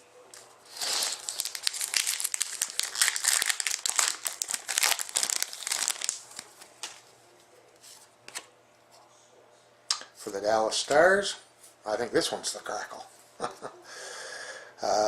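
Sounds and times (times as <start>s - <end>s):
plastic wrapper crinkling: 0.7s - 7.0s.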